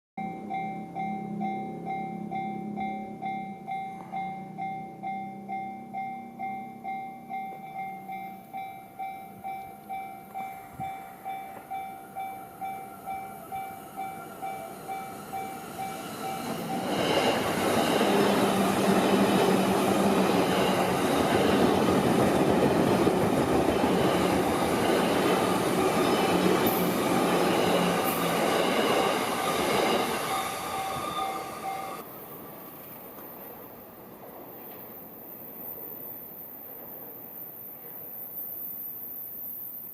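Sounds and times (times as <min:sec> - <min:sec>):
level-crossing warning bell ringing: 0:00.2 - 0:32.1
train passing over crossing: 0:00.2 - 0:35.6.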